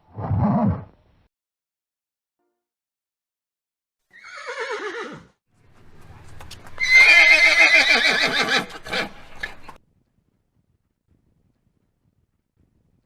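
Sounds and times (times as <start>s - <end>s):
horse whinnying: 4.1s - 5.3s, 6.8s - 9.6s.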